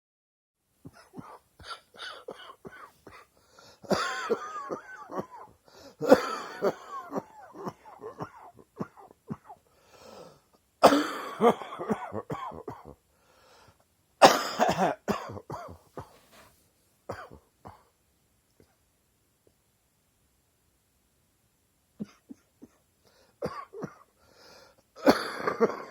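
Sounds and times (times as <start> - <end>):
person coughing: 0.9 - 3.2, 3.9 - 9.6, 10.8 - 13.0, 14.2 - 16.4, 17.1 - 17.9, 23.4 - 24.1, 25.0 - 25.9.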